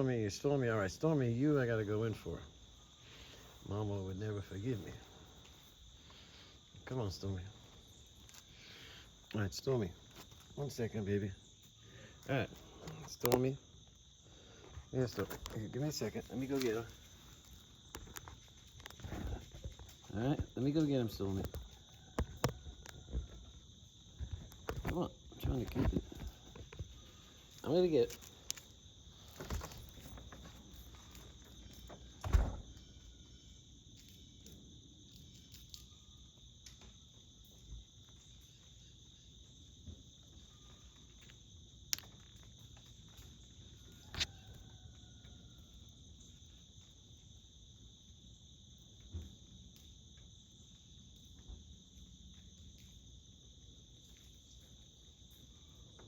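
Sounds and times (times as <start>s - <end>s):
insects trilling: 0.0s - 56.0s.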